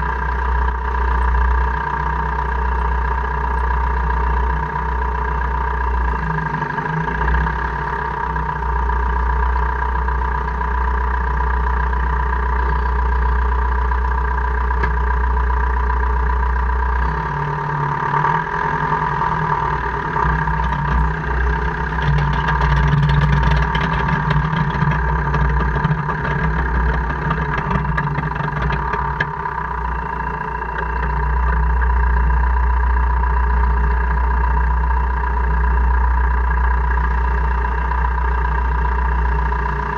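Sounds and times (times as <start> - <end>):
car engine running: 0.0 - 39.9
drivetrain gear grinding and clicking: 14.6 - 15.2, 18.1 - 32.2.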